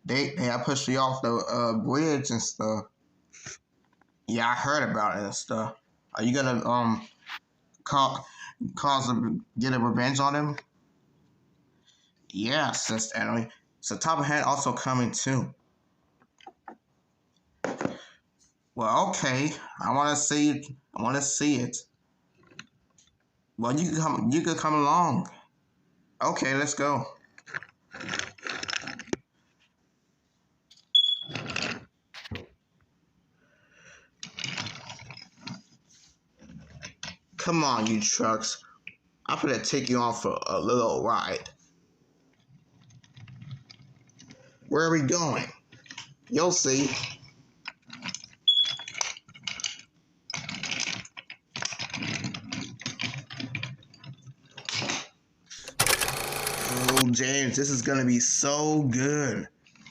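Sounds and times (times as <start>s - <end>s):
short high whistle tone: 30.9s - 31.4s, 48.5s - 48.9s
wooden toy trains clattering: 46.8s - 55.1s.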